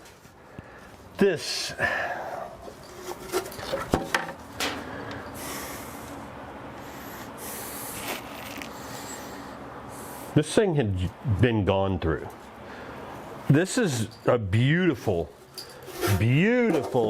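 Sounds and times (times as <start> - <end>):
tools rubbing and scraping: 2.6 - 4.0, 15.4 - 17.0.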